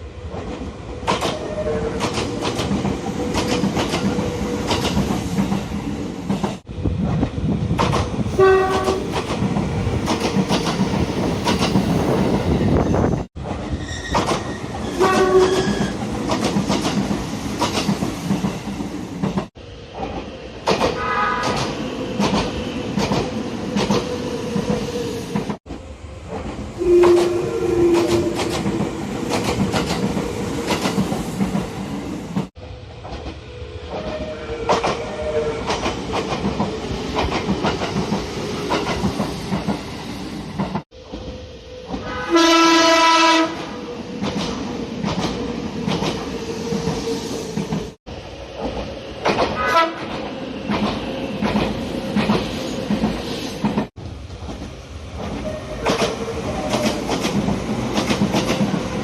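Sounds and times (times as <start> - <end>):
train wheels clicking over rail joints: 0.2 - 12.4, 13.4 - 35.0, 35.6 - 39.9, 44.1 - 59.0
train horn blast: 8.3 - 9.0, 15.0 - 15.8, 26.8 - 28.4, 42.0 - 43.7, 49.6 - 50.1.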